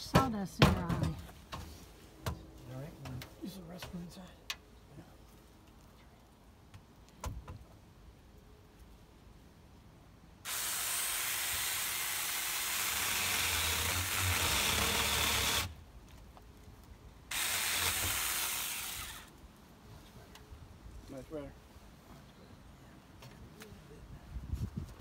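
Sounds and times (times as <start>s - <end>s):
power tool cutting wood: 10.5s - 15.7s, 17.3s - 19.3s.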